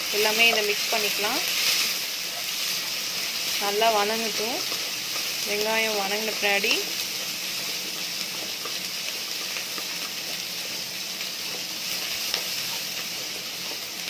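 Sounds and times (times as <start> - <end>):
onions sizzling in oil: 0.0 - 14.0.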